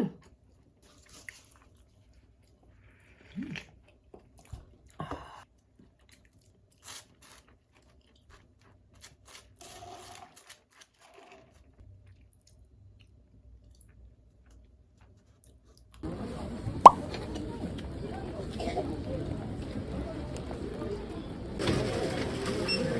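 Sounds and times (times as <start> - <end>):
person chewing and crunching: 5.9 - 9.6.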